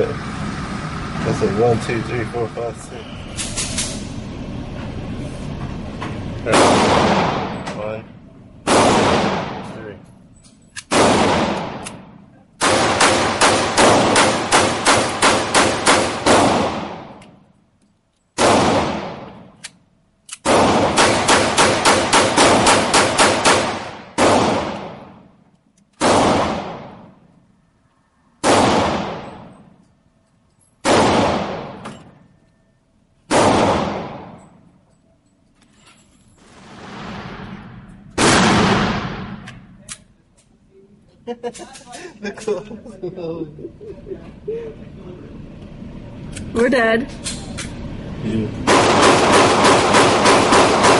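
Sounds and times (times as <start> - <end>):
gunshots with echo: 6.5 - 7.6, 8.6 - 9.8, 10.9 - 17.2, 20.4 - 25.3, 26.0 - 27.2, 28.4 - 29.6, 30.8 - 31.8, 33.3 - 34.4, 36.6 - 39.6, 48.6 - 50.9.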